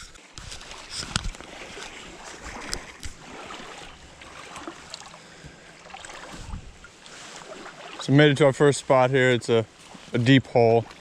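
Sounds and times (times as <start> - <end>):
river water rushing: 0.7 - 10.2
wind on microphone: 6.3 - 6.9.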